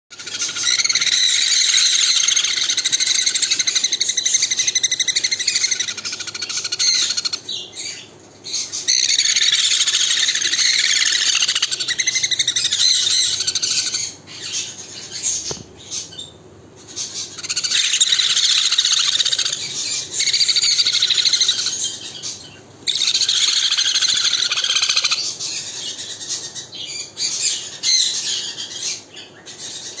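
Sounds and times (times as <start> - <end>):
parrot calling loudly: 0.1 - 7.4, 8.9 - 14.4, 17.4 - 22.0, 22.9 - 25.2.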